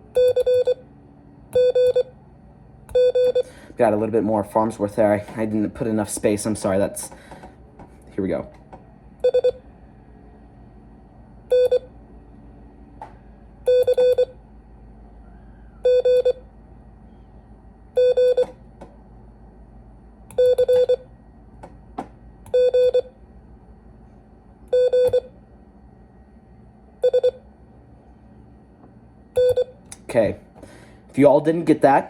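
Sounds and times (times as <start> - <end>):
morse code beeps: 0.2 - 0.8, 1.6 - 2.1, 2.9 - 3.5, 9.2 - 9.6, 11.5 - 11.9, 13.7 - 14.4, 15.8 - 16.4, 18.0 - 18.6, 20.4 - 21.1, 22.5 - 23.1, 24.7 - 25.3, 27.0 - 27.4, 29.4 - 29.8.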